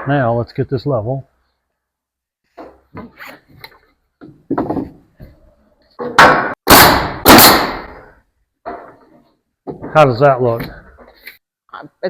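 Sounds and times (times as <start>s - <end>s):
loud sharp nailing impacts: 6.0s - 9.0s.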